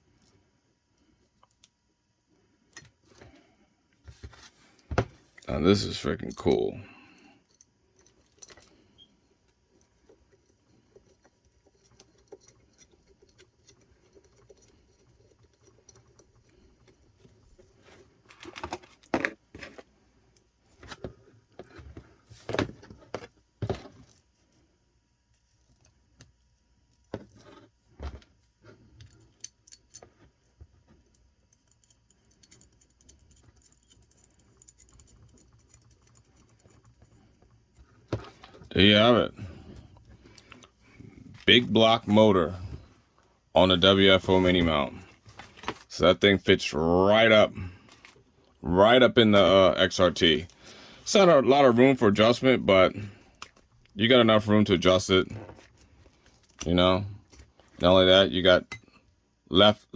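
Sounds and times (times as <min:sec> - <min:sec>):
metallic clicks and clinks: 0:31.1 - 0:37.2.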